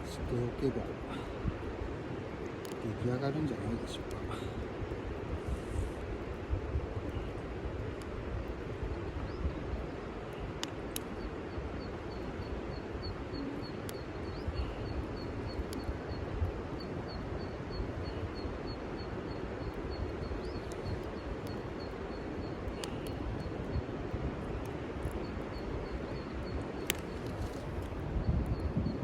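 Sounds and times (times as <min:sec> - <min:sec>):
wind buffeting microphone: 0:00.0 - 0:29.0
wood fire crackling: 0:00.0 - 0:29.0.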